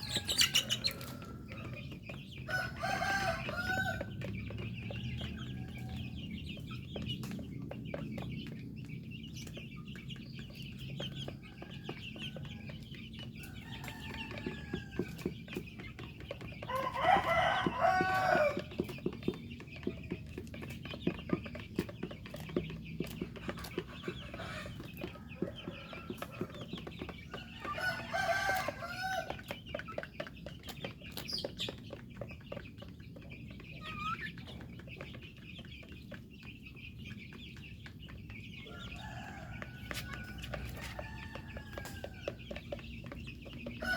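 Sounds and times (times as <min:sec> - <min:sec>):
chickens clucking: 0:00.0 - 0:43.9
rooster crowing: 0:02.5 - 0:04.1, 0:16.7 - 0:18.7, 0:27.7 - 0:29.3, 0:38.7 - 0:42.2.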